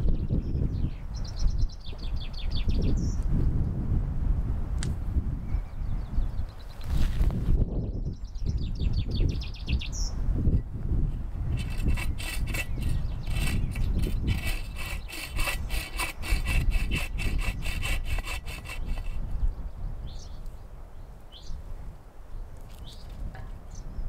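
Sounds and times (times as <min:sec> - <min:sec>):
hand saw cutting firewood: 0:11.5 - 0:19.3.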